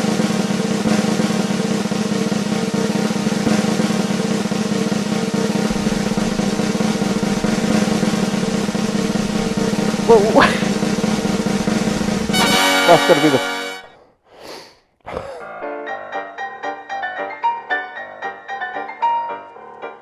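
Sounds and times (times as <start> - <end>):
motorcycle engine running: 0.9 - 13.9.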